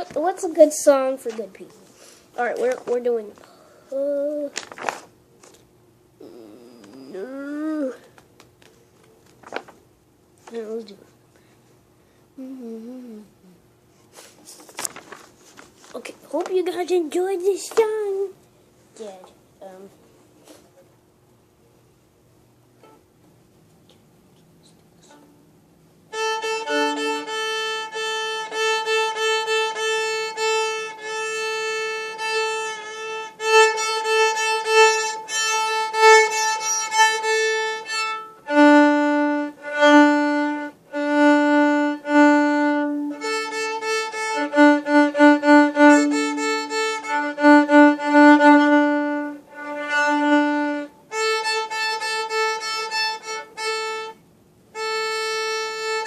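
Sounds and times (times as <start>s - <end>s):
solo viola bowed tune: 26.1s - 56.0s.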